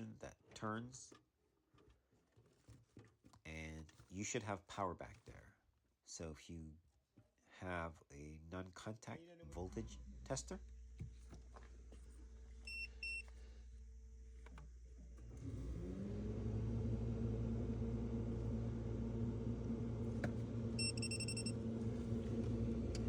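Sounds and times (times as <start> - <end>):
motor humming: 14.6 - 23.0
short electronic beeps: 20.8 - 21.5
long beep: 20.8 - 21.6.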